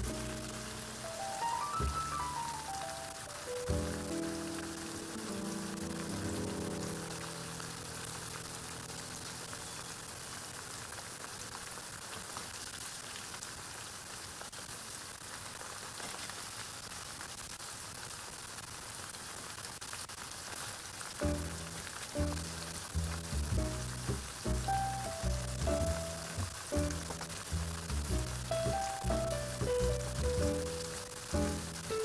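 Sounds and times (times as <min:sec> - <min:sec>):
food deep-frying in oil: 0:00.0 - 0:32.0
background music with beat: 0:24.5 - 0:27.3, 0:28.0 - 0:31.8.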